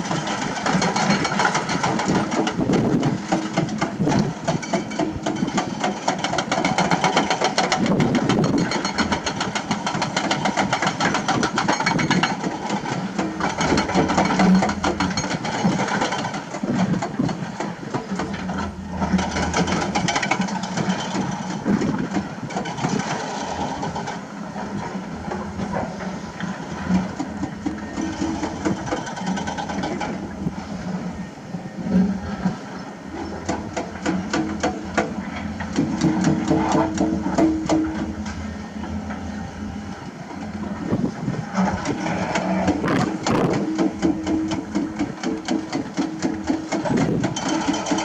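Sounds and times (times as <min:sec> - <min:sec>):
diesel machinery engines clattering: 0:00.0 - 0:48.0.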